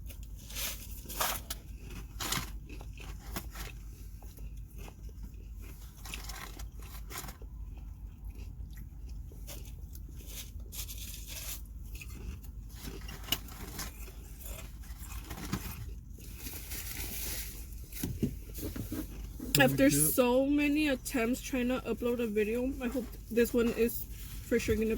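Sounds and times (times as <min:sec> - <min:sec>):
food being chewed and crunched: 0:00.0 - 0:20.2
steady low hum: 0:19.2 - 0:24.9.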